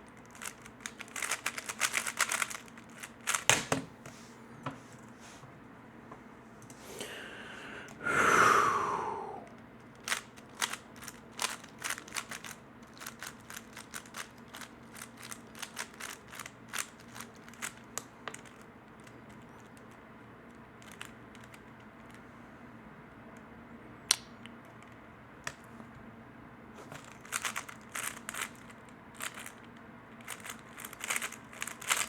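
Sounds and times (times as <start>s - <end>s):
puzzle cube clicking: 0.2s - 3.8s, 10.0s - 18.6s, 27.0s - 29.6s, 30.2s - 32.0s
rushing breath-like sound: 6.8s - 9.5s.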